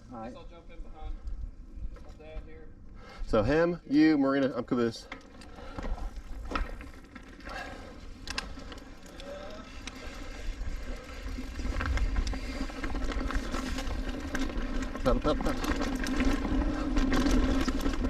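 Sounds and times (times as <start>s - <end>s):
bike rattling and knocking: 4.6s - 18.0s.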